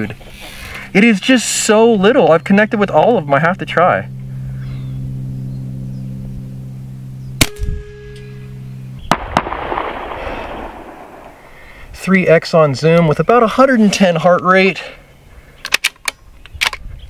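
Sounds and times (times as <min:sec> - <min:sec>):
soft hiss: 0:00.0 - 0:13.8
steady low hum: 0:00.0 - 0:17.0
air rifle shot: 0:07.4 - 0:07.7, 0:09.0 - 0:11.7.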